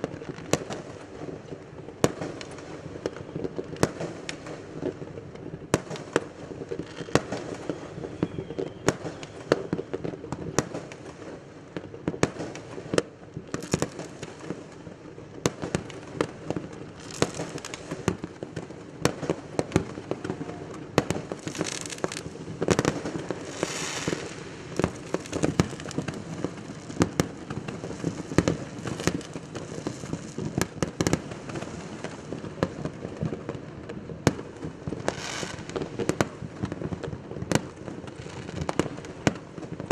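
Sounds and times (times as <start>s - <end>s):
fireworks bangs: 0.0s - 39.9s
hissing crackle: 21.2s - 30.7s.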